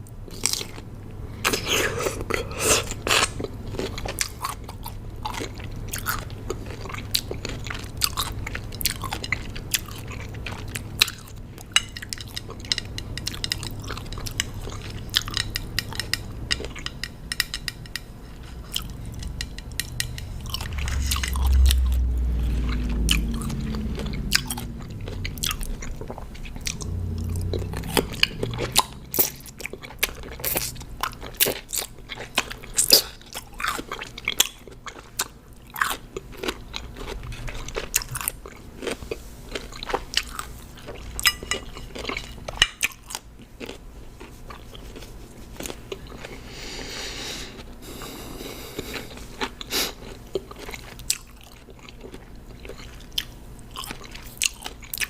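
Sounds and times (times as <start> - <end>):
chewing cucumber crunches: 18.4 - 46.5, 48.7 - 55.0.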